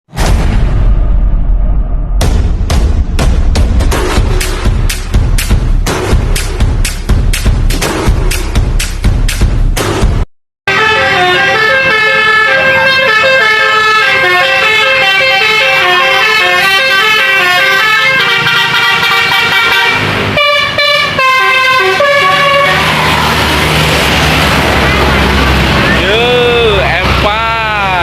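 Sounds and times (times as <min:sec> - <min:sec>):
multi-tone air horn melody: 0:10.7 - 0:23.2
bus engine and tyres passing: 0:10.7 - 0:28.0.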